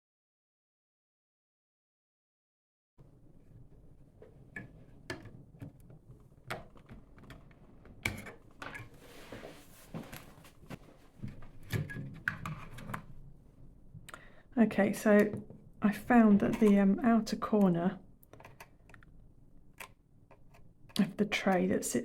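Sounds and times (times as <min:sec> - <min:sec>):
rustling sliding sound: 0:08.9 - 0:11.6.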